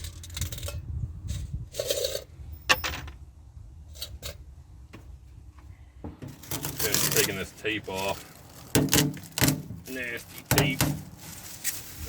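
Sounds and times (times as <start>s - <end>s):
tools and small parts handled: 0.0s - 3.2s, 6.2s - 12.0s
low steady background rumble: 0.0s - 12.0s.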